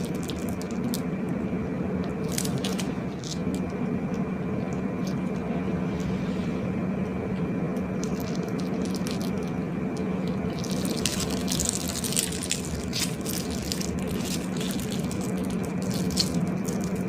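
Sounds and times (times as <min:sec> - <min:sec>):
slime squishing: 0:00.0 - 0:01.1, 0:02.0 - 0:06.4, 0:07.9 - 0:17.0
small wet clicks and crackles: 0:00.0 - 0:01.1, 0:02.0 - 0:03.7, 0:08.0 - 0:17.0
steady low hum: 0:00.0 - 0:17.0.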